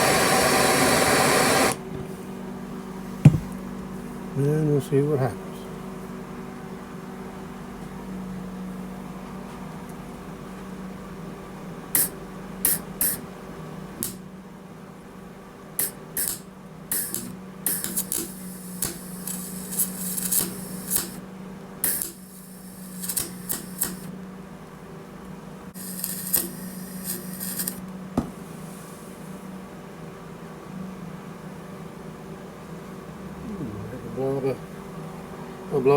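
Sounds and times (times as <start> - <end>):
steady low hum: 0.0 - 35.9
welding arc crackling: 15.8 - 21.2, 21.8 - 24.1, 25.7 - 27.8.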